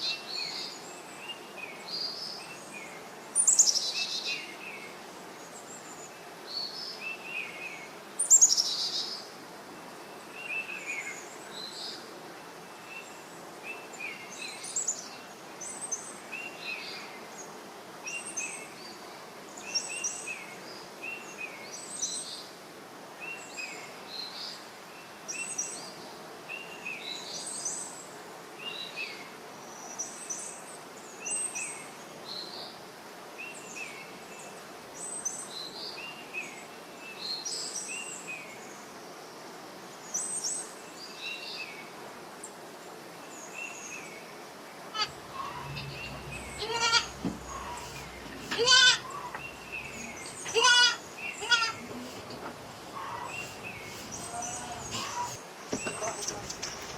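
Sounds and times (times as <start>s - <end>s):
steady outdoor hiss: 0.0s - 56.9s
birds chirping and calling: 45.0s - 56.9s.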